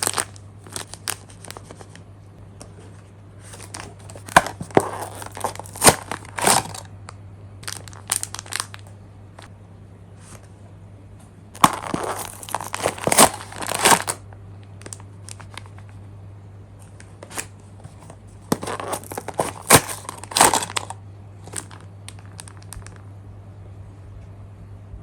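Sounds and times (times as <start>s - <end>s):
plastic packaging crinkling and tearing: 0.0s - 2.0s, 3.4s - 6.9s, 7.6s - 8.9s, 11.6s - 14.2s, 18.0s - 23.0s
low electrical hum: 0.0s - 25.0s.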